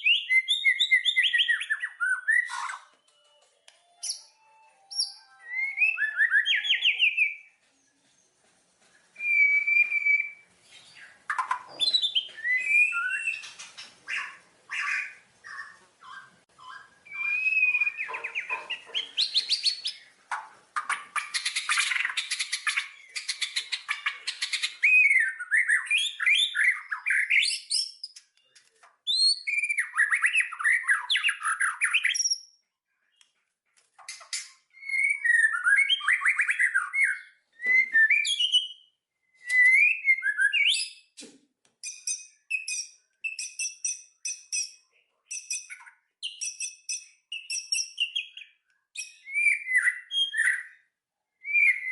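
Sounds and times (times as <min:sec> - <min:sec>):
songbirds chirping and singing: 0:00.0 - 0:08.4, 0:09.2 - 0:32.6, 0:34.0 - 0:41.1, 0:41.8 - 0:51.9
repeated high bird chips: 0:04.0 - 0:07.5.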